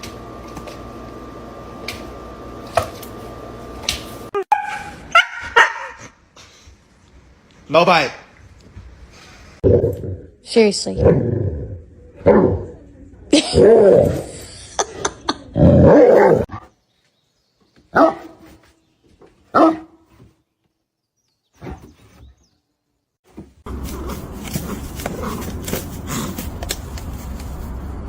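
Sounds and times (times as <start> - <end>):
dog barking: 4.4 - 6.2, 17.9 - 18.5, 19.5 - 20.0.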